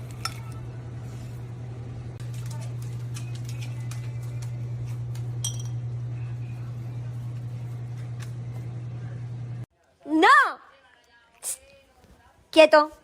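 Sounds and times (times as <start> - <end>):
dishes and utensils clinking: 0.0 - 0.6, 5.4 - 5.9
steady low hum: 0.0 - 9.7.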